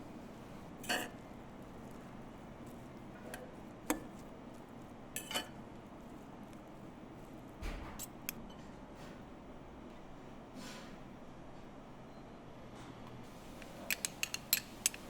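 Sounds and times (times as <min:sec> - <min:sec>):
steady background hum: 0:00.0 - 0:15.0
utensils and dishes clinking: 0:00.8 - 0:01.2, 0:05.2 - 0:05.6, 0:13.5 - 0:15.0.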